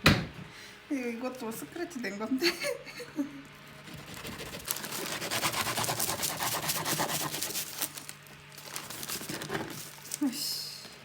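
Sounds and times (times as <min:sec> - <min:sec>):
bread knife sawing crust: 0:03.8 - 0:07.9.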